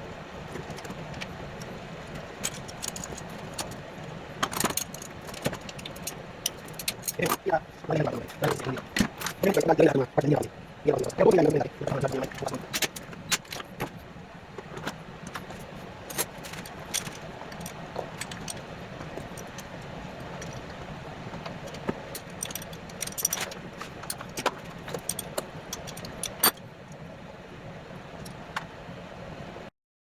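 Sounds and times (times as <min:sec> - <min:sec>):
low background hum: 0:00.0 - 0:29.7
metal tools clinking: 0:04.5 - 0:13.6, 0:21.6 - 0:26.6.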